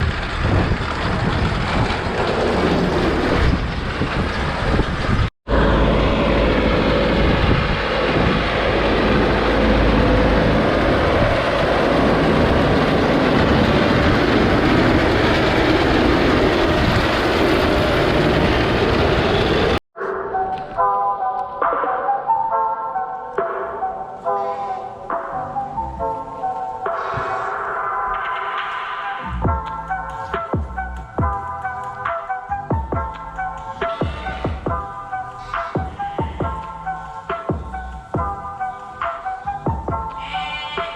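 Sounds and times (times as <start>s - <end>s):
hay baling machinery running: 0.0s - 19.8s.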